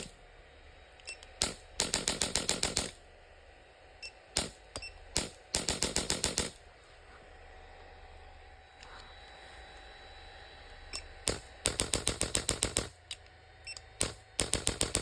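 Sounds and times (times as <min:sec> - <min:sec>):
adjuster gun rapid clicks: 0:01.4 - 0:03.0, 0:05.2 - 0:06.6, 0:11.2 - 0:13.2, 0:13.8 - 0:15.0.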